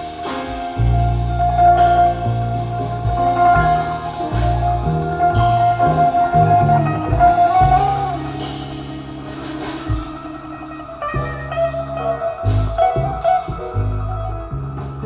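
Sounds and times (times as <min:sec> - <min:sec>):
guitar music with bass and drums: 0:00.0 - 0:15.0.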